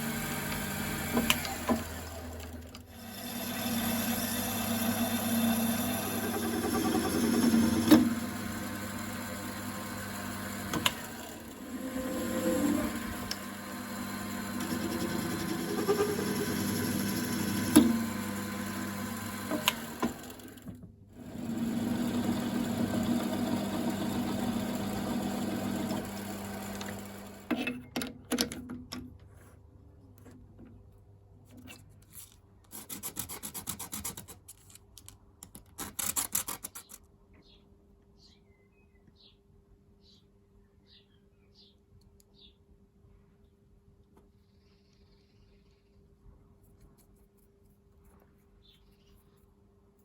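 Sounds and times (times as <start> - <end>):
metal lathe humming: 0.0 - 20.6, 21.2 - 27.6.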